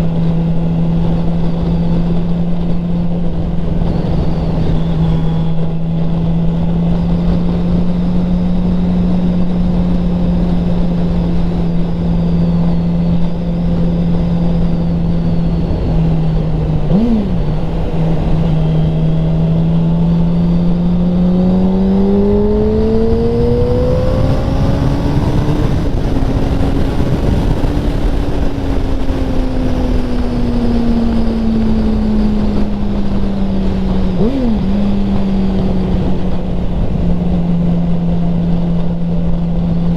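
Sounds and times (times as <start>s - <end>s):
motorcycle engine running: 0.0s - 39.9s
wind noise: 0.0s - 39.9s.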